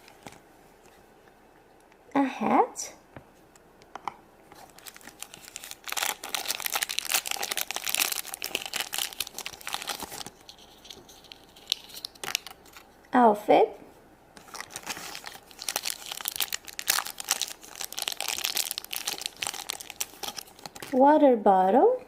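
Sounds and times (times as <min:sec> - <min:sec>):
plastic bag tearing and crinkling: 0:04.6 - 0:12.9, 0:14.4 - 0:21.0.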